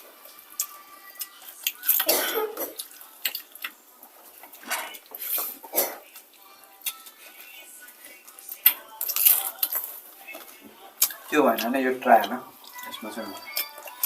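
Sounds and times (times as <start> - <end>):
person coughing: 2.0 - 2.8.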